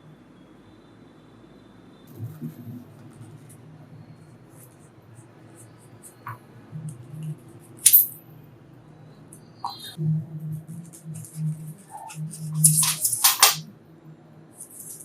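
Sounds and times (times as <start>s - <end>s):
low steady hum: 0.0s - 15.0s
scratching and clicking on cork: 10.8s - 13.6s, 14.6s - 15.0s.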